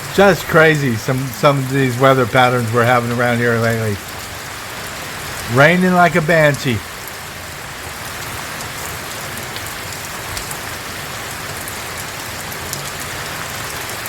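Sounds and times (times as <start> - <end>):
heavy rain pouring: 0.0 - 14.0
rain drop ticks: 0.0 - 14.0.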